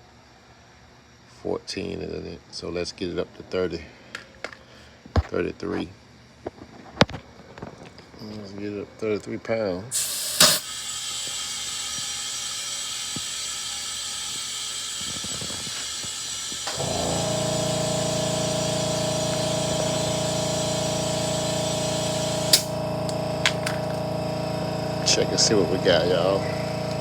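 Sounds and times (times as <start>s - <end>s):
air hissing into tyre: 9.9s - 26.9s
compressor motor humming: 9.9s - 27.0s
sharp click: 10.0s - 10.6s, 22.5s - 23.8s.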